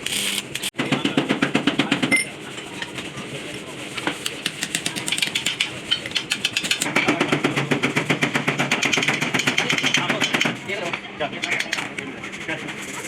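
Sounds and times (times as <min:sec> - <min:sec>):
rapid hammering on metal: 0:04.2 - 0:10.7.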